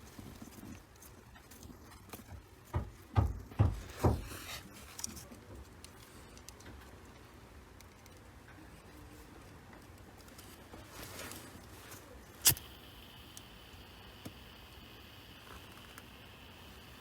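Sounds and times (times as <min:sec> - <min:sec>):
sharp click: 0:12.4 - 0:14.8.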